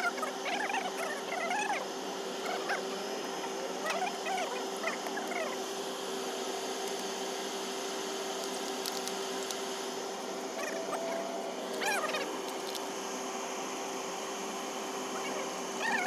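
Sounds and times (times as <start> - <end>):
machine hum: 0.0 - 16.0
dog whining: 15.2 - 16.0.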